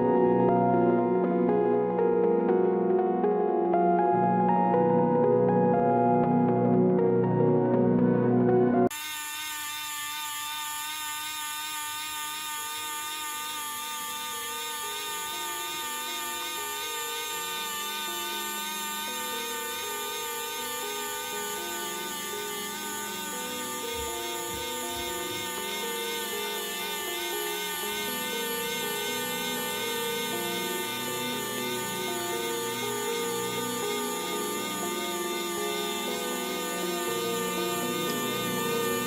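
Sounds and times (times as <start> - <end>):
pen feed motor whining: 8.9 - 39.0.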